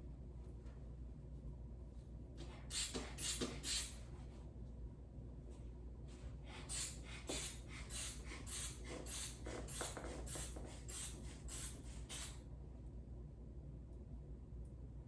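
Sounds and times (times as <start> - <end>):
hand bulb pump hissing: 2.7 - 4.0, 6.7 - 12.4.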